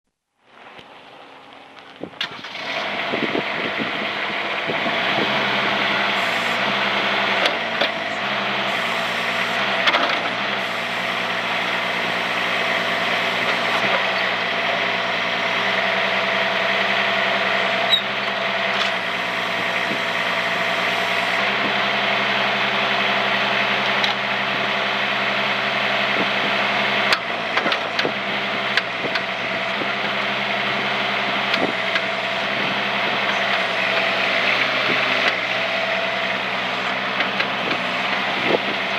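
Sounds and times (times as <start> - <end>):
high whine: 0.1 - 26.9
excavator engine running: 0.5 - 38.9.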